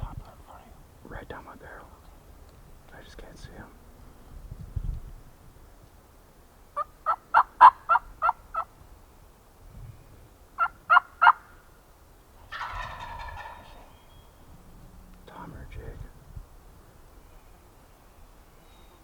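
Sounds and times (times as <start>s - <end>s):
turkey gobbling: 6.8s - 8.7s, 10.6s - 11.6s, 12.4s - 14.2s
turkey yelping: 6.8s - 8.7s, 10.6s - 11.5s, 12.4s - 14.2s.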